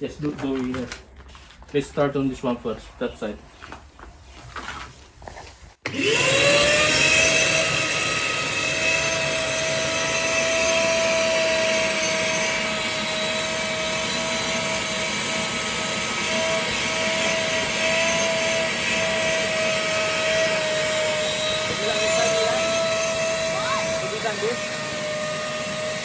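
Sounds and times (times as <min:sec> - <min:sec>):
vacuum cleaner running: 0:05.8 - 0:26.0.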